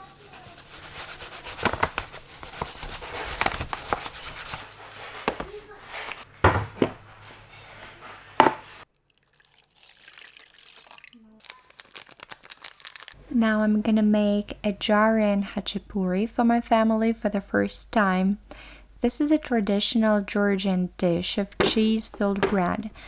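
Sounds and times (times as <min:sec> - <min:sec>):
kitchen items clicking and knocking: 0:00.0 - 0:07.1, 0:21.4 - 0:23.0.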